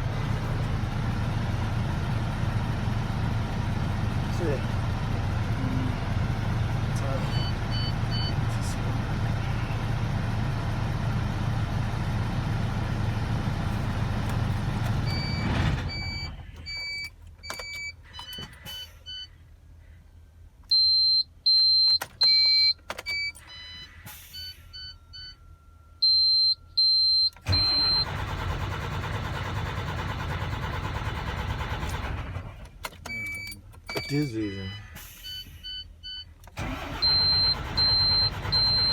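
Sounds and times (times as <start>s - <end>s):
diesel truck engine running: 0.0s - 19.4s, 22.0s - 38.9s
truck warning beeper: 6.9s - 10.0s, 15.0s - 19.4s, 20.7s - 28.7s, 33.0s - 38.9s
engine starting: 15.0s - 17.0s, 27.4s - 32.9s, 36.5s - 38.9s.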